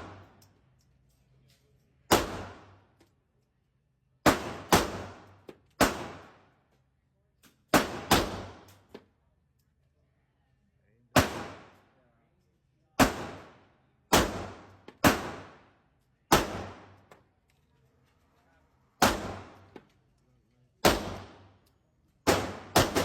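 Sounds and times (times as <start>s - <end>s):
gunshots with ringing decay: 0.0s - 0.4s, 2.1s - 2.8s, 4.2s - 6.6s, 7.7s - 8.7s, 11.1s - 11.8s, 13.0s - 17.1s, 19.0s - 19.7s, 20.8s - 21.6s, 22.2s - 23.0s.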